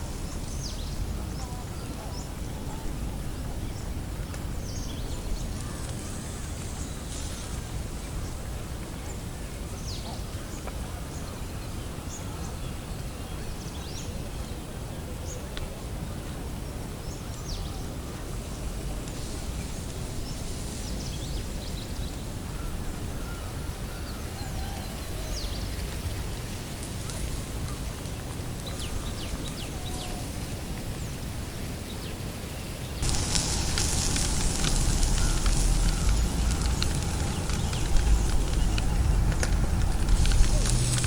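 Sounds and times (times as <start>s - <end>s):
low outdoor rumble: 0.0s - 13.7s, 33.0s - 41.0s
birds chirping: 32.6s - 41.0s.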